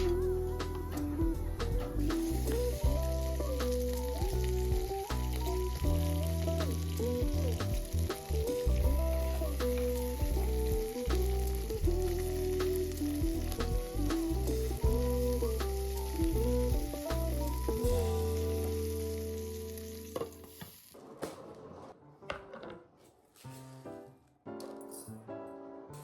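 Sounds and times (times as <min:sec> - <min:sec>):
background music: 0:00.0 - 0:20.5
food sizzling in a pan: 0:00.0 - 0:21.2.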